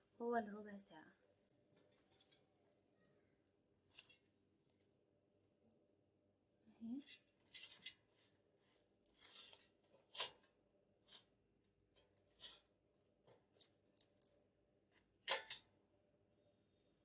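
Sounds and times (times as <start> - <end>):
utensil scraping air fryer basket: 9.1 - 10.5, 12.2 - 12.7.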